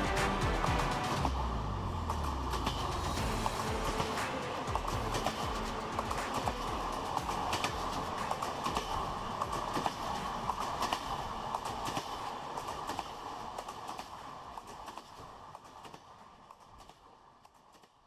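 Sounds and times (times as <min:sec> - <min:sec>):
steady train rumble: 0:00.0 - 0:16.8
train wheels clattering on rails: 0:02.0 - 0:17.9.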